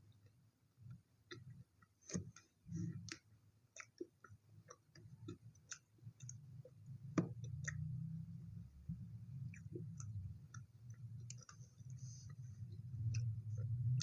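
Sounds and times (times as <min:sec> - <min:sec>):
wet mouth chewing clicks: 0:03.8 - 0:08.2
low rumble: 0:11.9 - 0:14.0.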